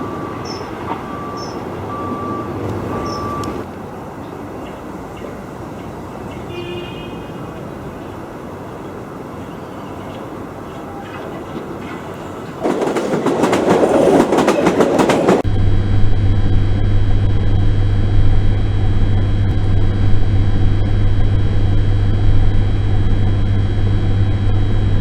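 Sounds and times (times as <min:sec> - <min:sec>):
rapid train clattering: 0:00.0 - 0:06.5, 0:07.3 - 0:15.5
train rumbling on rails: 0:00.0 - 0:24.0
low engine drone: 0:15.4 - 0:25.0.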